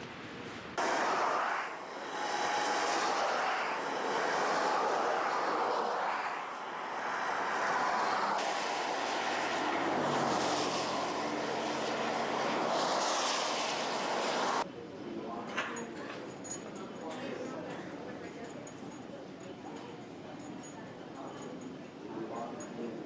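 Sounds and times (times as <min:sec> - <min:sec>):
rushing traffic noise: 0:00.7 - 0:14.7.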